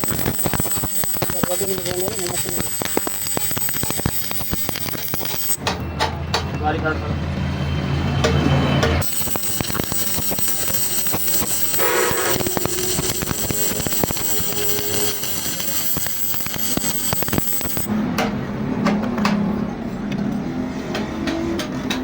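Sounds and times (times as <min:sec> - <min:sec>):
electric arc welding crackling hiss: 0:00.0 - 0:05.6, 0:09.0 - 0:17.9.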